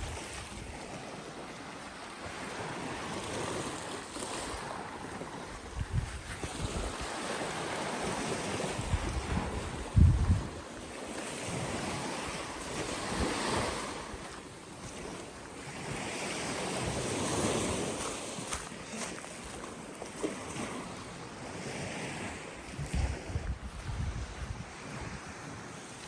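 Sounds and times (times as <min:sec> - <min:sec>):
small waves washing ashore: 0:00.0 - 0:26.0
wind buffeting microphone: 0:04.5 - 0:18.7, 0:20.5 - 0:25.8.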